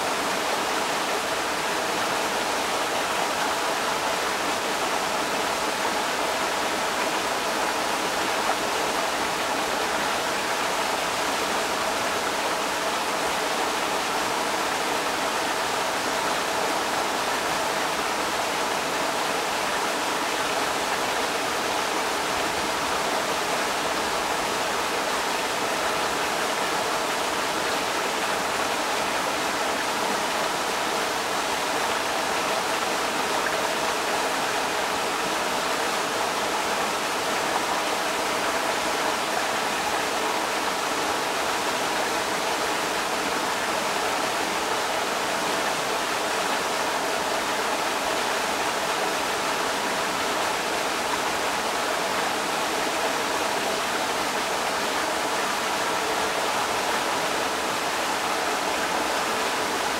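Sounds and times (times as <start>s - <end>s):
creek water rushing over rocks: 0.0s - 59.9s.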